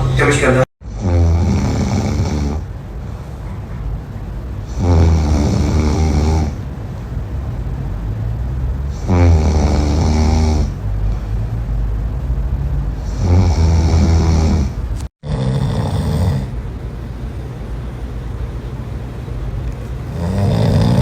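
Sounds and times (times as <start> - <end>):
person snoring: 0.9 - 2.6, 4.7 - 6.6, 8.9 - 11.4, 13.0 - 16.5, 20.1 - 21.0.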